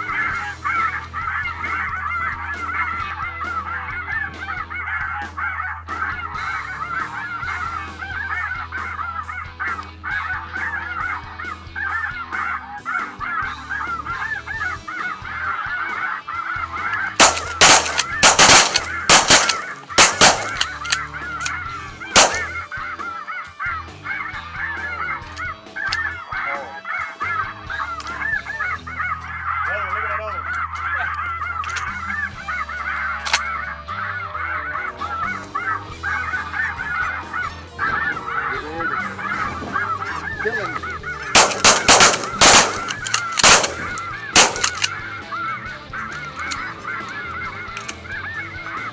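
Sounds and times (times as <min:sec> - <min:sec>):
geese honking: 0:00.0 - 0:48.9
shotgun shots: 0:17.2 - 0:22.6, 0:41.3 - 0:44.9.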